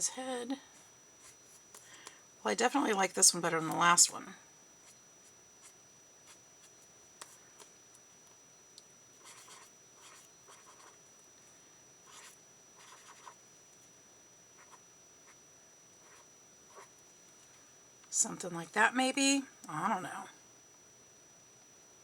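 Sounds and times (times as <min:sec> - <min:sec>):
pen scratching on paper: 0:09.2 - 0:11.0, 0:12.0 - 0:13.4, 0:16.0 - 0:16.9.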